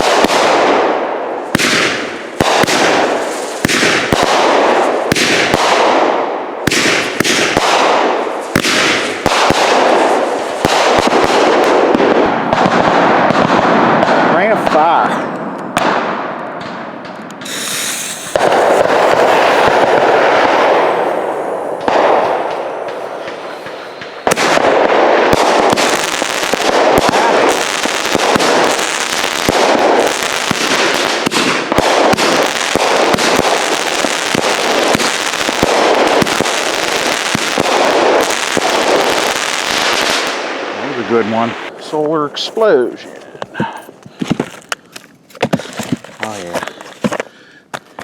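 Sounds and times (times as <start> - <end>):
firework cake firing: 0.0 - 15.1, 15.7 - 44.3
sharp firework reports: 0.0 - 43.7
rushing firework burst: 6.7 - 13.1, 17.4 - 41.7.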